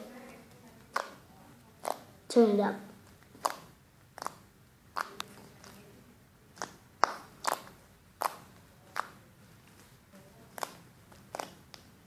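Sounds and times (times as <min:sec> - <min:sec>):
slime popping and clicking: 0:00.8 - 0:01.2, 0:03.1 - 0:05.8, 0:06.6 - 0:09.2.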